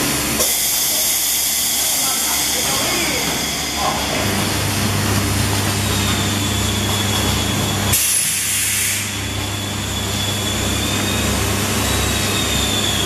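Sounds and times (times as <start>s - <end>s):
hiss of released air: 0.4s - 3.8s, 7.9s - 9.2s.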